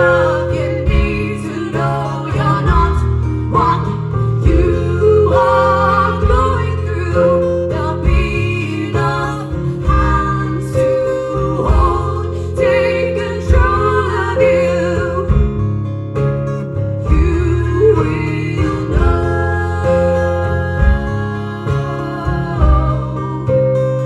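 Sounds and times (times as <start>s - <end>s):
person singing: 0.0s - 15.6s, 17.1s - 24.0s
acoustic guitars strummed: 0.0s - 24.0s.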